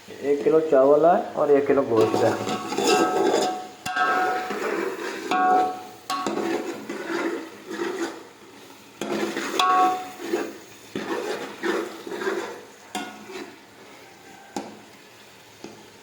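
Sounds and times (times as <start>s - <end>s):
metal ladle scraping cooking pot: 1.9s - 13.9s.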